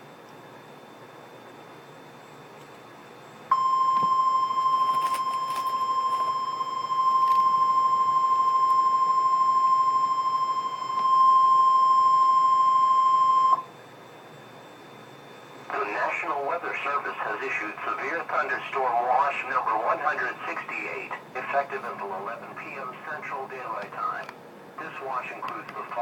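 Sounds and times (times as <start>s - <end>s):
steady alarm tone: 0.6s - 21.1s
faint radio hiss: 15.6s - 26.0s.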